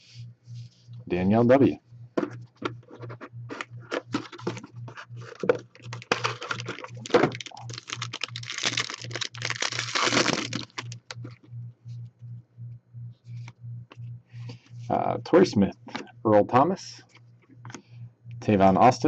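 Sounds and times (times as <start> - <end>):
cards clicking and tapping: 3.5 - 4.6
wrapper crinkling: 3.9 - 11.4.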